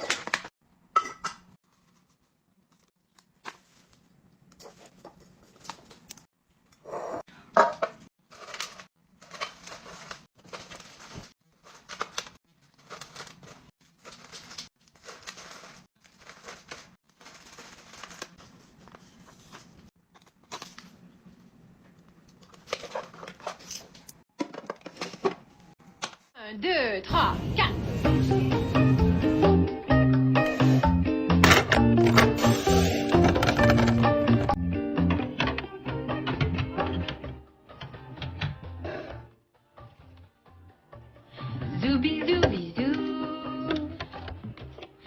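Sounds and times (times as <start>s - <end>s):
packaging rustling and tearing: 8.2s - 20.9s.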